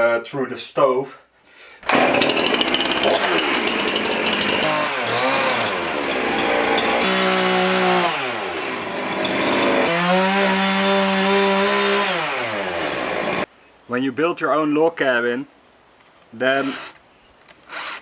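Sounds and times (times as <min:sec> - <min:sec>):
chainsaw cutting into log: 0:01.8 - 0:13.5, 0:16.6 - 0:18.0.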